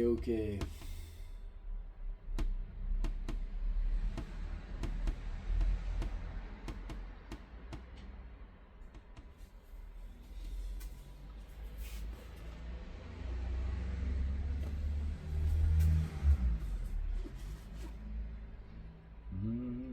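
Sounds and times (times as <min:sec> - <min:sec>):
sharp clicks and taps: 0:04.2 - 0:08.2
low steady hum: 0:12.4 - 0:19.9.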